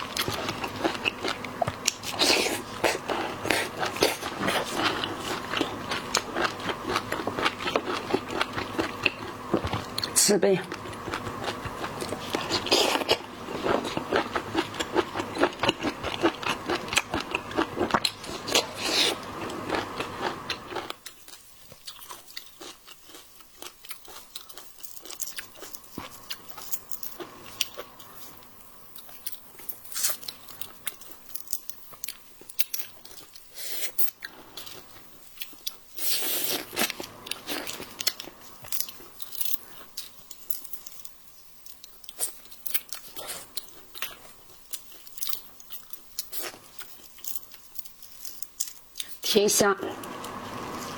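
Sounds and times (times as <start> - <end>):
crunching and chewing food: 0.0 - 49.3.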